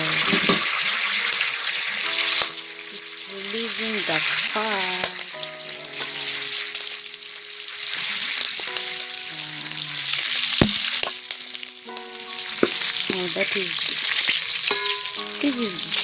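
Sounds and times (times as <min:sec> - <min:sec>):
pork sizzling in fat: 0:00.0 - 0:16.0
sharp knocks: 0:10.6 - 0:11.1.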